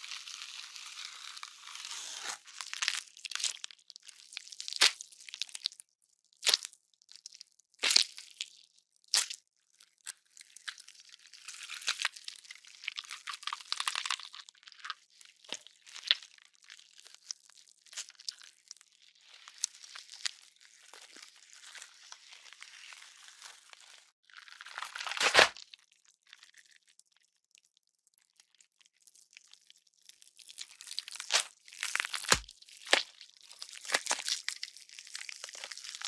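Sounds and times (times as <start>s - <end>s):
wet flesh tearing and squishing: 0.0s - 5.7s, 9.1s - 9.4s, 10.0s - 25.7s, 30.1s - 36.0s
heavy deep bone crunch: 32.0s - 33.0s.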